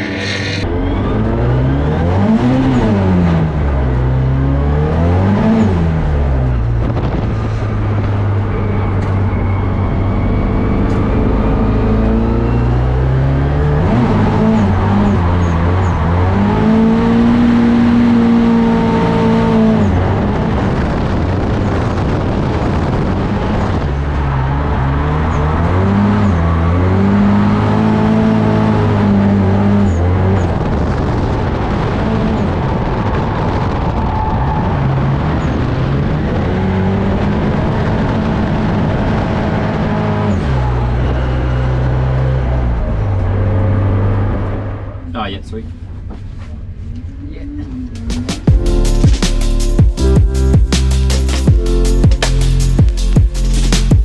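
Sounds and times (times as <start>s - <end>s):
spinning tyres rushing: 0.0s - 0.7s
car engine revving hard: 1.2s - 6.1s, 11.0s - 20.6s.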